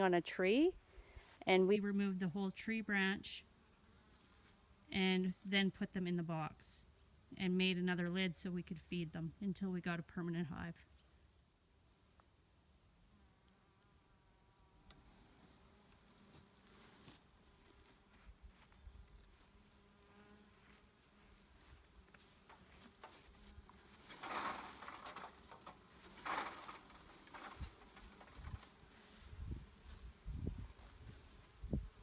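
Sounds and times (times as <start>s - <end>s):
high insect drone: 0.5s - 1.5s
honey bees buzzing: 19.3s - 32.0s
loud rustling: 22.5s - 28.8s.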